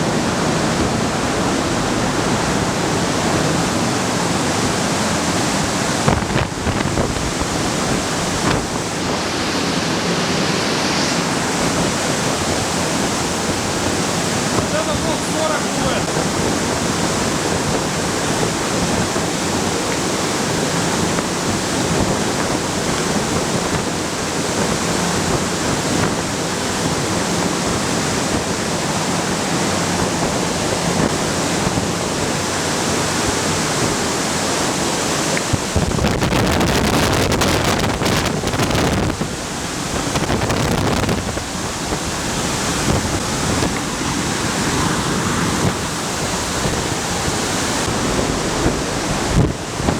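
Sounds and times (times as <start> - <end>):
ventilation fan air rush: 0.0 - 49.9
wind buffeting microphone: 0.0 - 49.9.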